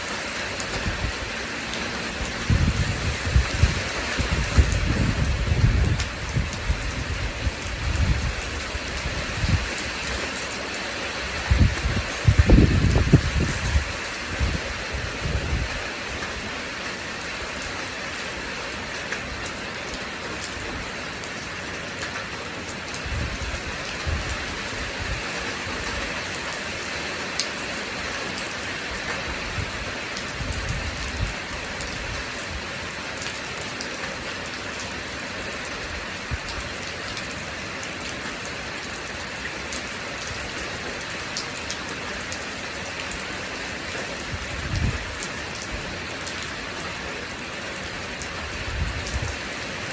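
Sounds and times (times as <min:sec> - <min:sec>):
steady rain falling: 0:00.0 - 0:49.9.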